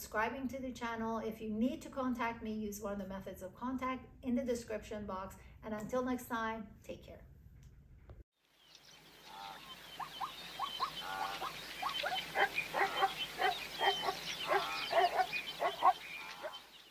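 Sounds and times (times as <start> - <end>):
animal calls squawks and chirps: 9.2 - 16.9.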